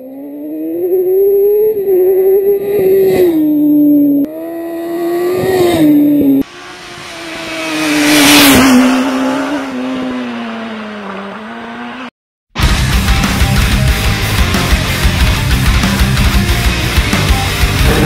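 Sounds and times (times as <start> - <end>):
motorcycle engine at high revs: 4.2 - 12.1, 17.6 - 18.0.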